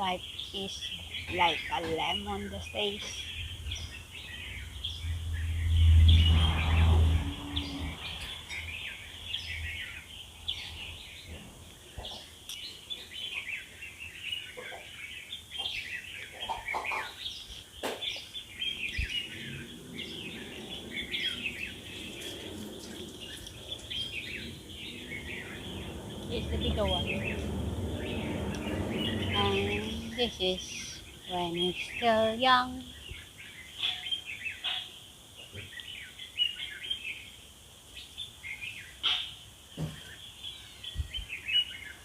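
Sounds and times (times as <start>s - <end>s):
small birds chirping: 0.0s - 42.0s
loud low rumble: 18.8s - 31.4s.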